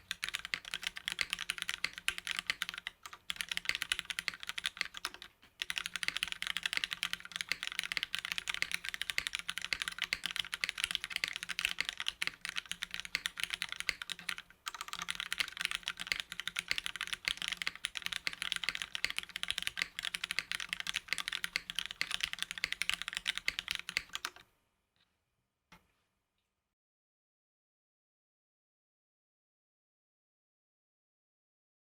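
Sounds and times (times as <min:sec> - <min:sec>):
typing on mechanical keyboard: 0:00.0 - 0:24.4.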